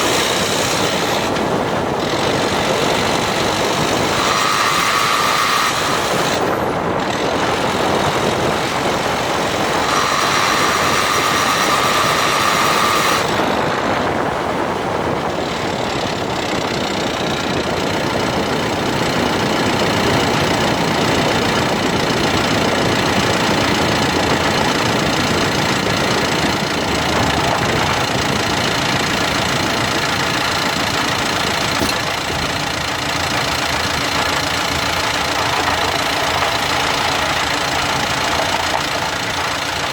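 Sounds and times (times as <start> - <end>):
car engine and road noise: 0.0 - 39.9
steady high tone: 24.0 - 39.0.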